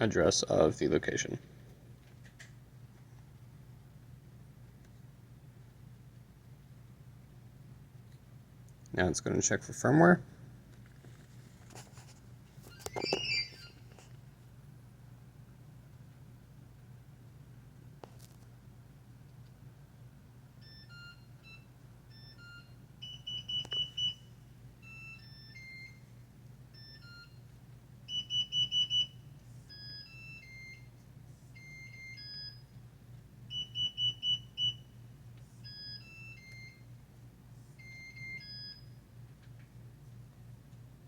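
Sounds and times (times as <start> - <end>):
smart lock beeps: 12.7 - 13.8, 20.6 - 24.2, 24.8 - 26.0, 26.8 - 27.4, 28.1 - 30.9, 31.6 - 32.7, 33.5 - 34.9, 35.6 - 36.8, 37.8 - 39.0.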